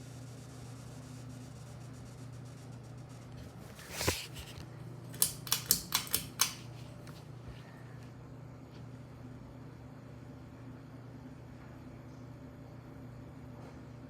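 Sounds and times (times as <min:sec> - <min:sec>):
ceiling fan humming: 0:00.0 - 0:14.0
sharp clicks: 0:05.1 - 0:06.6.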